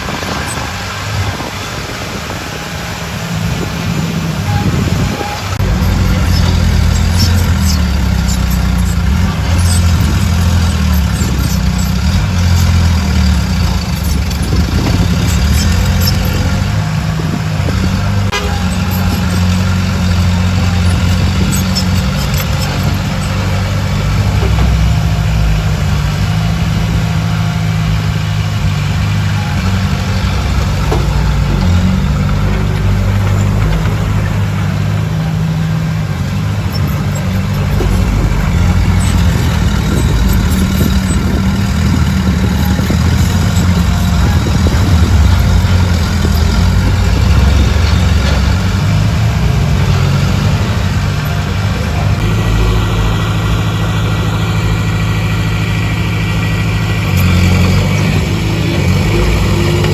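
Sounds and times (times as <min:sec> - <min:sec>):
diesel machinery drone: 0:00.0 - 0:59.9
clicks and clanks: 0:04.5 - 0:52.3.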